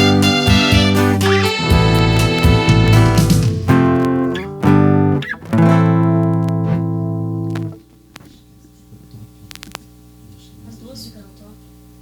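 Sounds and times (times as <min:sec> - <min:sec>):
guitar strumming chords: 0:00.0 - 0:07.8
faint clicks: 0:09.5 - 0:09.9.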